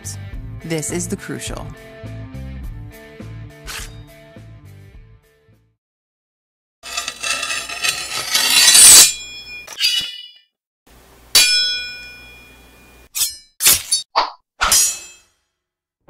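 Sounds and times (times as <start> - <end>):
metallic clang ringing: 11.4 - 13.5.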